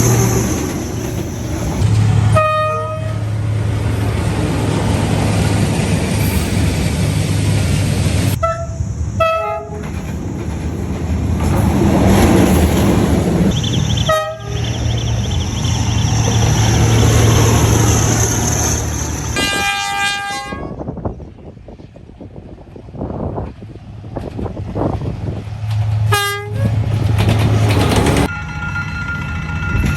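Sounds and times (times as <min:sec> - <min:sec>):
diesel locomotive running: 0:00.0 - 0:29.9
locomotive horn blasts: 0:02.2 - 0:03.3, 0:08.4 - 0:09.9, 0:14.0 - 0:14.8, 0:19.3 - 0:20.9, 0:26.1 - 0:26.8, 0:28.3 - 0:29.9.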